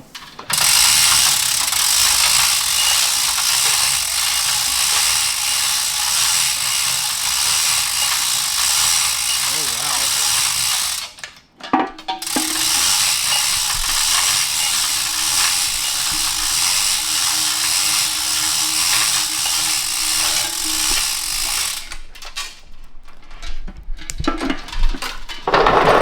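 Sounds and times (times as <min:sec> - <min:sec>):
metal parts clicking and knocking: 0:00.2 - 0:26.0
power tool running: 0:00.5 - 0:11.2, 0:12.2 - 0:22.1.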